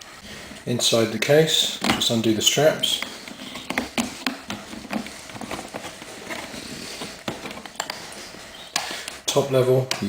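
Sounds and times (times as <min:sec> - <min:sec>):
leather straps and buckles handled: 0:01.7 - 0:08.7.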